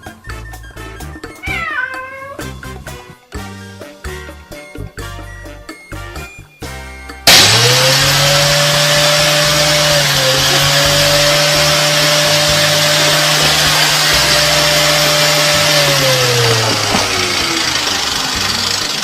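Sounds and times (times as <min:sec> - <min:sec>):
electric motor spinning: 0:07.3 - 0:19.0.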